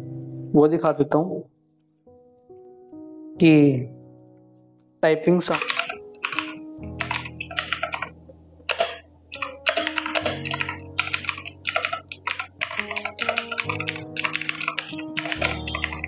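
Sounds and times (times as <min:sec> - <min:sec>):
clicky mechanical keyboard typing: 0:05.5 - 0:16.0.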